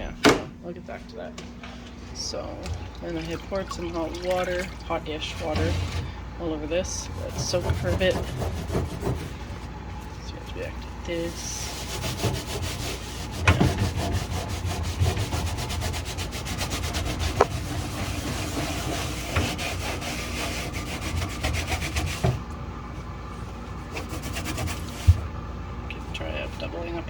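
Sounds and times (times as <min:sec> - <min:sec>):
cloth pad scrubbing wet surface: 0:06.8 - 0:09.6, 0:11.1 - 0:22.4, 0:23.8 - 0:25.2.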